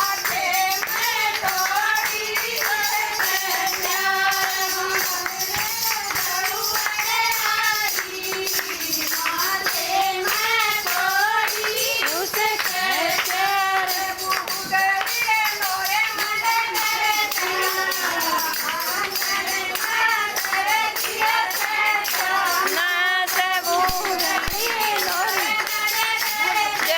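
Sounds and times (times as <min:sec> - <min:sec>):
devotional song singing: 0:00.0 - 0:26.9
jingling hand percussion: 0:00.0 - 0:26.9.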